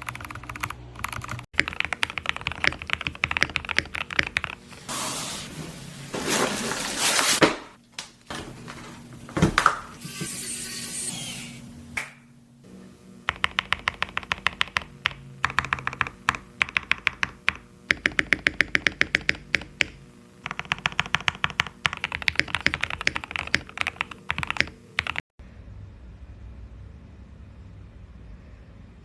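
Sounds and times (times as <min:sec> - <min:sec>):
mechanical keyboard typing: 0:00.0 - 0:04.6, 0:13.3 - 0:25.2.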